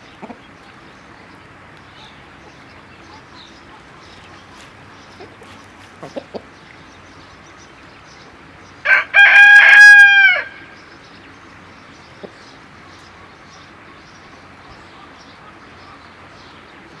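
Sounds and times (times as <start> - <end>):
chicken clucks: 0.1 - 0.8, 2.0 - 6.6
rooster crowing: 8.8 - 10.8.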